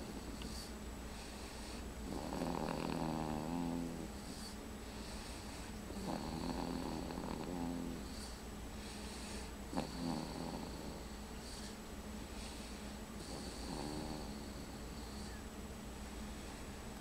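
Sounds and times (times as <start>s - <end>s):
baby snoring: 2.1s - 4.6s, 6.0s - 8.4s, 9.7s - 11.8s, 13.2s - 15.4s
breathy hissing exhales: 3.1s - 15.5s.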